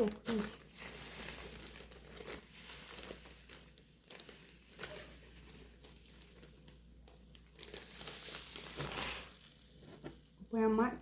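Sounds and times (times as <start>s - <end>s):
sugar rustling: 0.0s - 11.0s.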